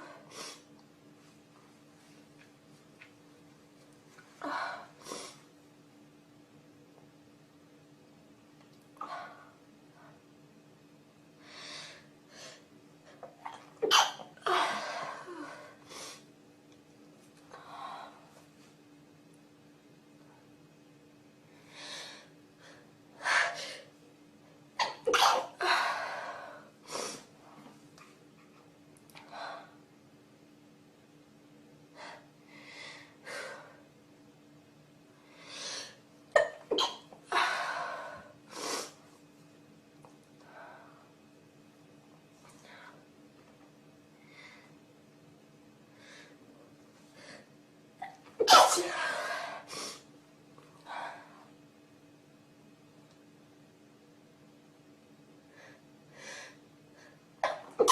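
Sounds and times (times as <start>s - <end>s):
person sneezing: 13.8s - 15.0s, 24.8s - 25.6s, 48.4s - 50.0s, 57.4s - 57.9s
sneeze-like burst: 48.4s - 49.1s.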